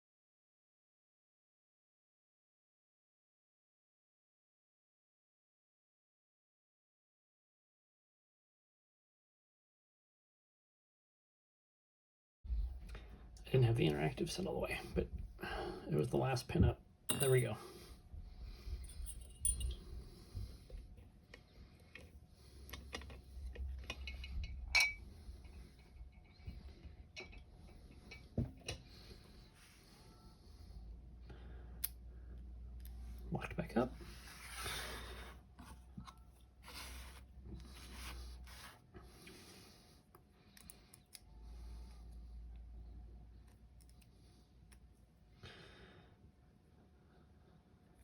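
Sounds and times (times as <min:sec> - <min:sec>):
ringing metallic clink: 0:17.1 - 0:17.5.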